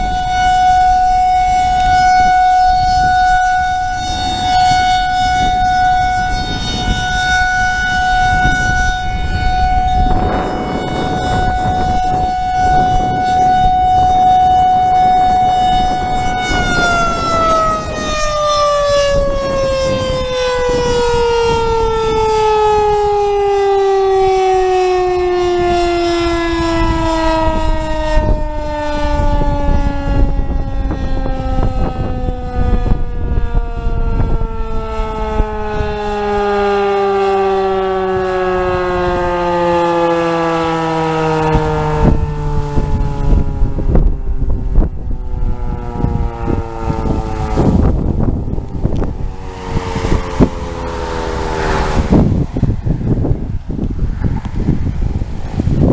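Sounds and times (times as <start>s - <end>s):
tornado warning siren: 0.0s - 55.9s.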